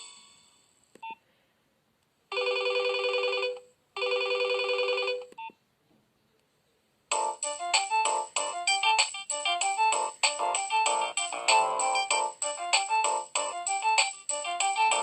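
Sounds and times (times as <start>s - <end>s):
melodic ringtone: 7.1s - 15.0s.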